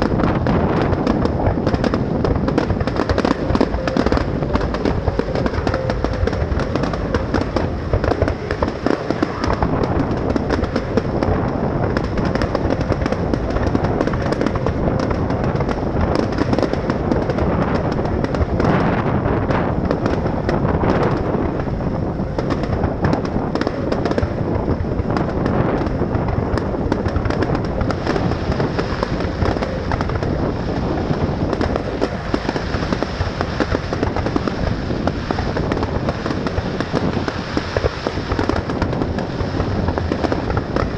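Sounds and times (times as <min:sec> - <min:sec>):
fireworks bangs and crackling: 0:00.0 - 0:40.9.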